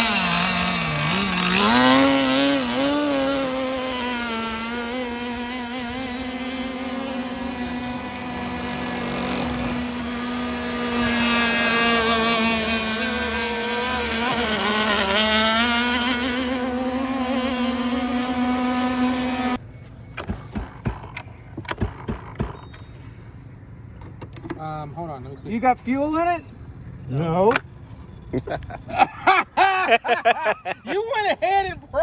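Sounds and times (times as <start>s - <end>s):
boat engine high-pitched buzz: 0.0s - 24.2s.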